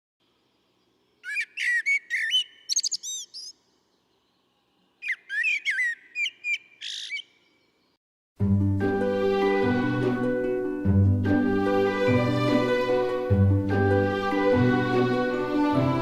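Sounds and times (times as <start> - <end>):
songbird whistling: 1.2 - 3.7, 5.0 - 7.6.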